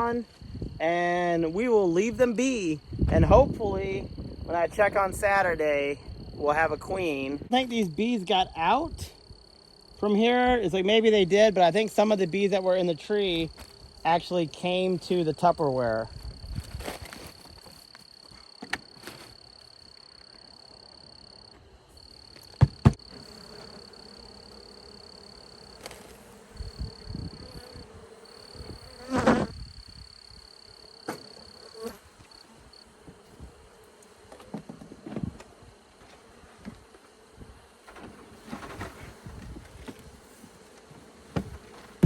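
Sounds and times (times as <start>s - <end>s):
high-pitched insect trill: 15.2s - 32.9s
bee swarm buzzing: 18.8s - 42.0s
loud thump: 22.6s - 23.0s
sharp knocks: 22.6s - 23.0s.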